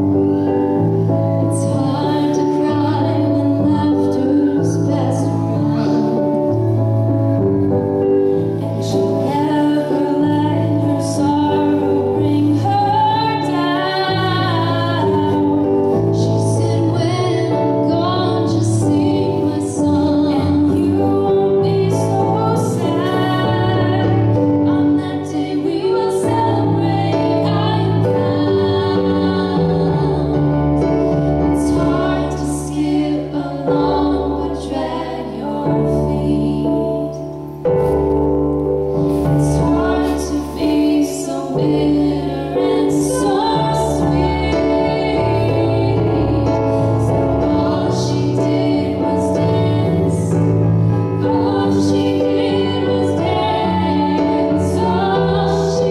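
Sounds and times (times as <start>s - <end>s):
instrumental accompaniment: 0.0s - 55.9s
woman singing: 1.3s - 6.6s, 8.6s - 37.4s, 39.3s - 55.9s.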